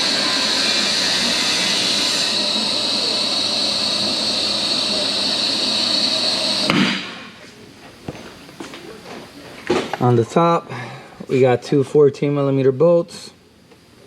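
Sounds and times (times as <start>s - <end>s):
car lift hissing: 0.0s - 7.5s.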